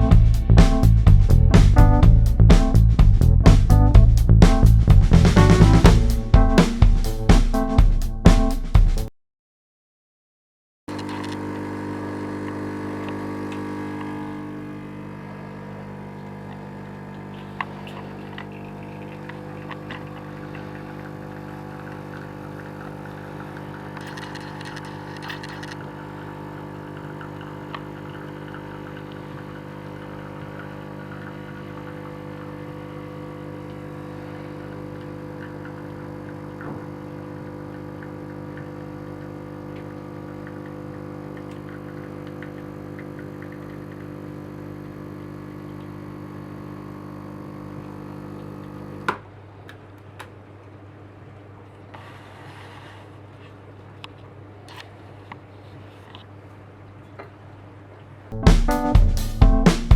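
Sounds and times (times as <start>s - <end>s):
espresso machine pump humming: 10.9s - 49.1s.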